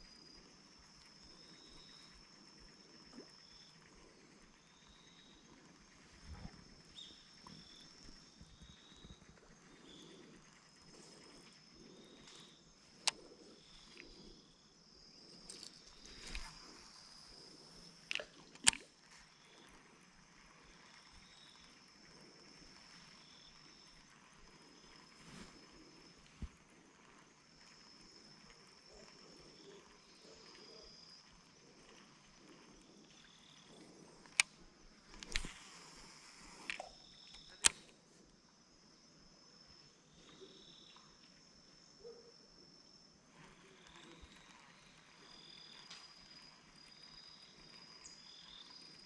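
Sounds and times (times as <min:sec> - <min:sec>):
high insect trill: 0:00.0 - 0:49.0
sharp clicks: 0:18.1 - 0:18.9, 0:34.2 - 0:35.6, 0:36.6 - 0:38.0.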